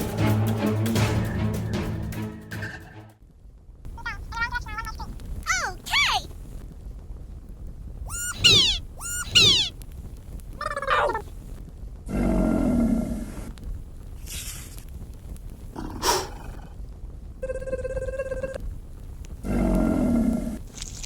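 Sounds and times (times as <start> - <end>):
cartoon falling whistles: 8.1 - 9.7
growl-like roar: 12.1 - 13.5, 15.8 - 16.8, 19.4 - 20.6
short hiss: 14.2 - 14.9.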